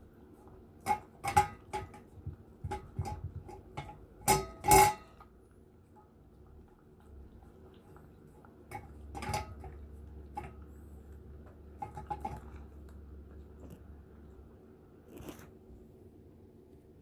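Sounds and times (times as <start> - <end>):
knocks against bowl: 1.2 - 5.0.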